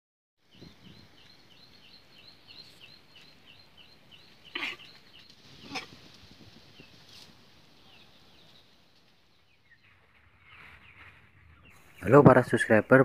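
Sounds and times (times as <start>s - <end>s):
sharp animal calls: 2.6s - 6.1s.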